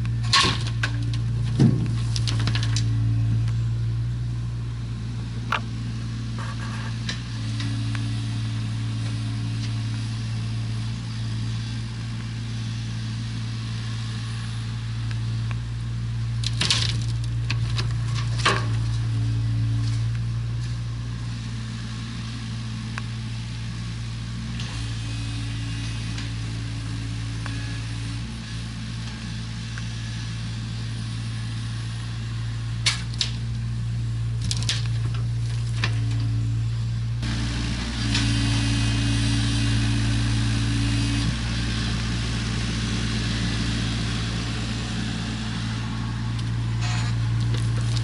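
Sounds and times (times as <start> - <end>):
heavy machine engine running: 0.0 - 48.0.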